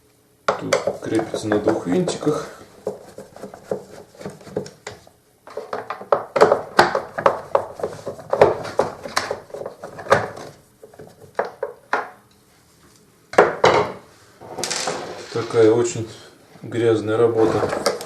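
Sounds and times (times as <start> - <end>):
vacuum cleaner parts clicking and clattering: 17.4 - 18.0.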